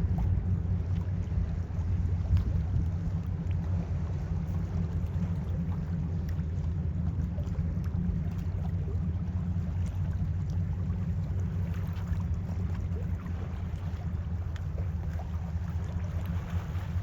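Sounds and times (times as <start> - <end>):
freighter low rumble: 0.0 - 17.0.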